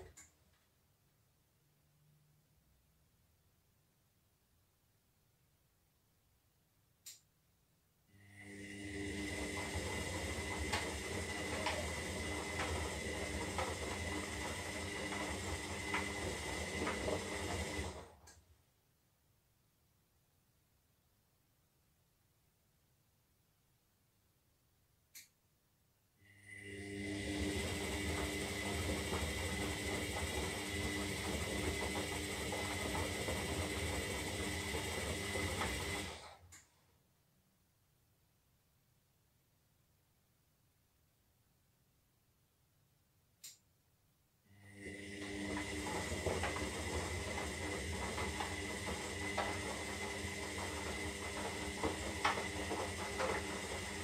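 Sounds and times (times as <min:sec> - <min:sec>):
faint click: 0:07.0 - 0:07.3, 0:25.1 - 0:25.4, 0:43.4 - 0:43.7
washing machine motor hum: 0:08.1 - 0:18.5, 0:26.2 - 0:36.5, 0:44.5 - 0:54.0.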